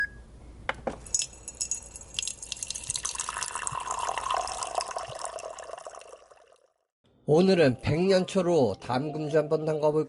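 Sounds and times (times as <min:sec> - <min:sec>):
water drips: 0:01.2 - 0:06.6
water splashing and trickling: 0:01.2 - 0:06.7.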